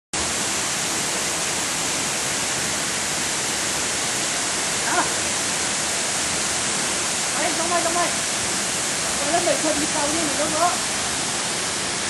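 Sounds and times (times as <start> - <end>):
waterfall pouring: 0.2 - 12.0
person's voice: 4.8 - 5.2, 7.4 - 8.2, 9.2 - 10.8.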